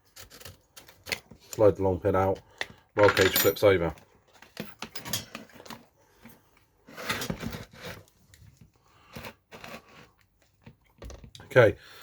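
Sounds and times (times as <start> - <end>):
plastic and metal rattles: 3.0 - 5.9, 10.5 - 11.5.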